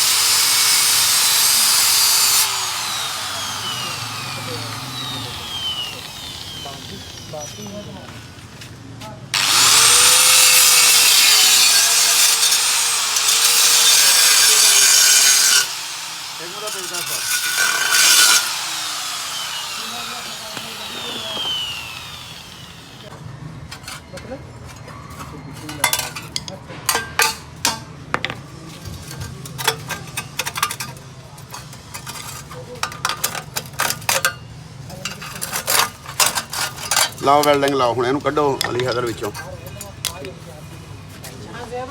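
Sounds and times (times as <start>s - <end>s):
angle grinder cutting metal: 0.0s - 8.1s, 9.4s - 23.1s.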